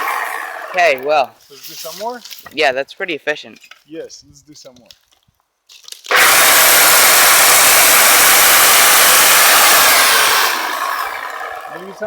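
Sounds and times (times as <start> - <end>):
chainsaw cutting a branch: 0.0 - 1.1, 6.0 - 12.0.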